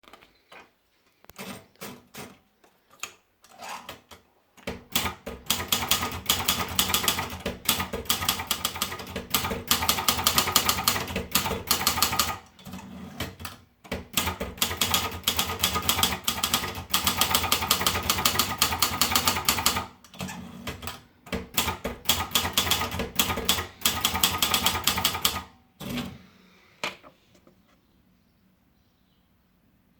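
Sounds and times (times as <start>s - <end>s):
typewriter keystrokes clacking: 4.0s - 26.1s.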